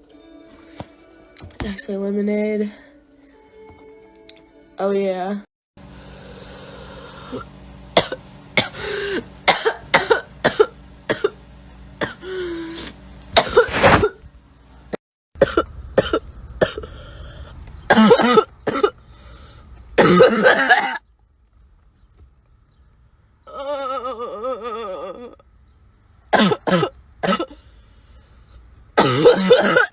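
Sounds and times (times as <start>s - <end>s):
girl's harsh barking cough: 8.0s - 11.3s, 17.9s - 18.9s, 20.0s - 21.0s, 26.3s - 27.6s, 29.0s - 29.9s.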